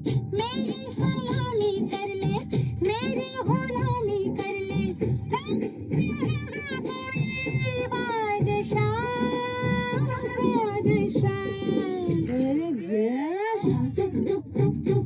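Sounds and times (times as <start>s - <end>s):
rhythmic instrumental accompaniment: 0.0s - 15.0s
person singing: 6.0s - 15.0s.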